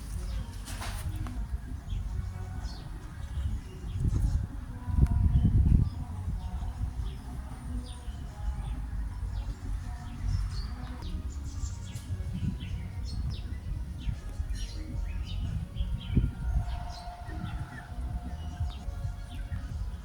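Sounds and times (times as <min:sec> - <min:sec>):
steady low rumble: 0:00.0 - 0:20.0
wild birds chirping: 0:00.0 - 0:20.0.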